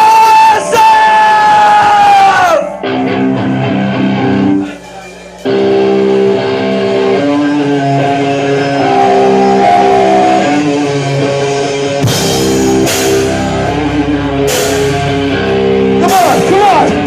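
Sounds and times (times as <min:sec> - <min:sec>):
electric guitar chords: 0:00.0 - 0:17.0
drum and cymbal hits: 0:11.4 - 0:17.0.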